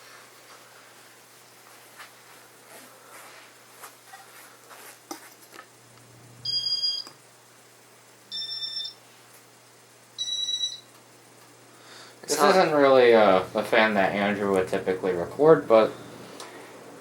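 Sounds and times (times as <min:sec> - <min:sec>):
two-tone electronic beeps: 0:06.4 - 0:07.2, 0:08.3 - 0:09.0, 0:10.2 - 0:10.9.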